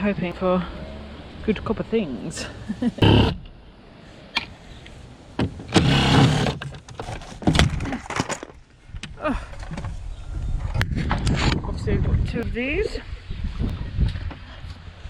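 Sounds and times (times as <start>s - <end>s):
knocks and clatter of metal casing: 6.5s - 8.6s.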